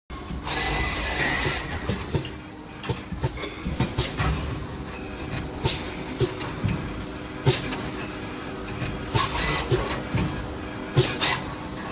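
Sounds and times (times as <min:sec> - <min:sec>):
machine humming: 0:00.2 - 0:11.9
machine clicks and knocks: 0:01.4 - 0:11.9.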